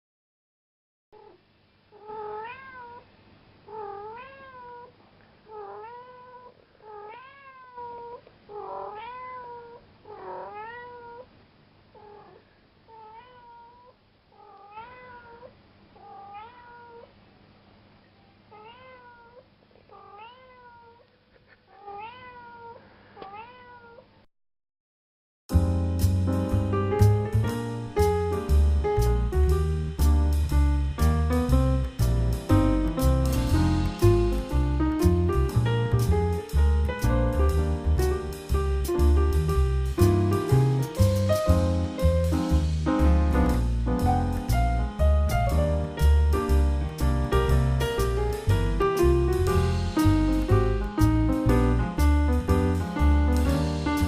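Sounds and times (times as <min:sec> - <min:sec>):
cat meowing: 0:01.2 - 0:03.1, 0:03.7 - 0:11.3, 0:12.0 - 0:17.1, 0:18.5 - 0:21.1, 0:21.7 - 0:24.1.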